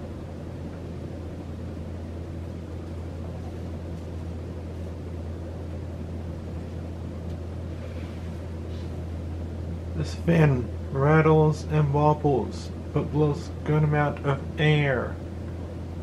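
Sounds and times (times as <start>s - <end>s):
ceiling fan whoosh: 0.0s - 16.0s
low motor hum: 0.0s - 16.0s.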